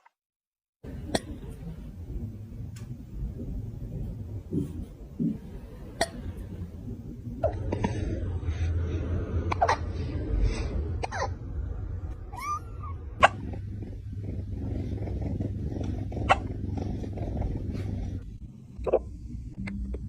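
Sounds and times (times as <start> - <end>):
kitten call rising and falling: 12.1 - 13.4
kitten hiccupping: 12.3 - 14.4.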